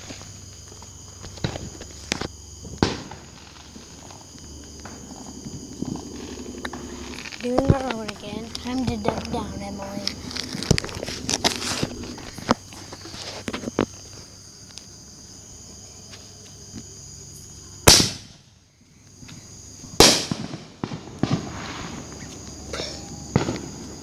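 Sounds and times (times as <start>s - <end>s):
firework bangs: 0.0s - 13.6s, 17.8s - 18.4s, 19.8s - 24.0s
insects chirring: 0.0s - 24.0s.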